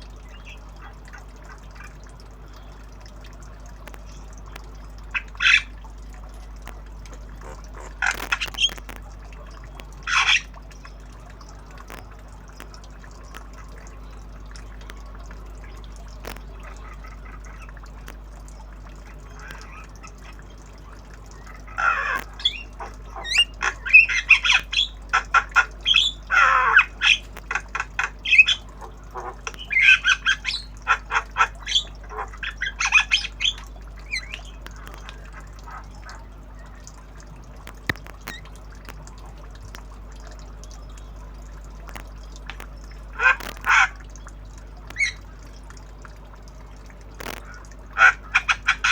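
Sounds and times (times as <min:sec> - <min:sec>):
myna rapid chattering calls: 0:05.1 - 0:05.8, 0:07.4 - 0:08.9, 0:10.0 - 0:10.5, 0:19.0 - 0:36.8, 0:42.6 - 0:44.0, 0:47.3 - 0:48.9
myna harsh squawks: 0:21.5 - 0:34.5.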